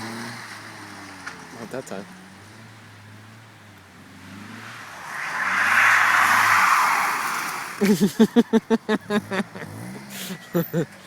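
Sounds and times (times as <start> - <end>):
tyres hissing on wet pavement: 4.6 - 8.4.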